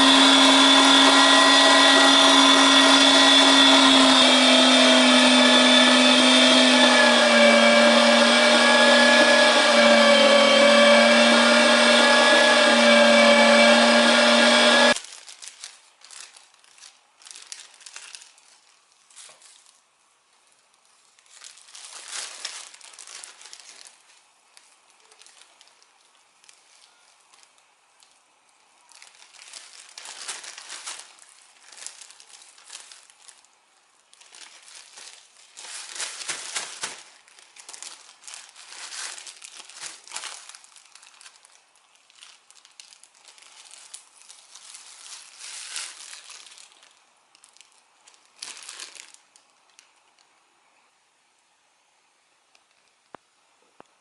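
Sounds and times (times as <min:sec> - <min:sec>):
electric meat grinder humming: 0:00.0 - 0:15.0
plastic bags crinkling: 0:00.0 - 0:50.3.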